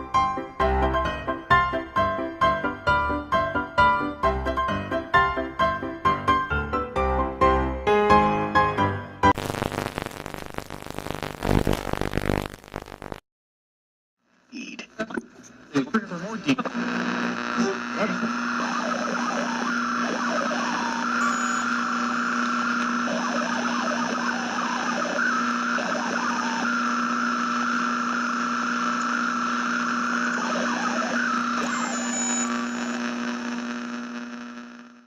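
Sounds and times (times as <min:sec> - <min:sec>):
radio hum and hiss: 0:09.4 - 0:13.2, 0:14.5 - 0:35.0
wavering whistle: 0:18.8 - 0:23.6, 0:30.5 - 0:32.9.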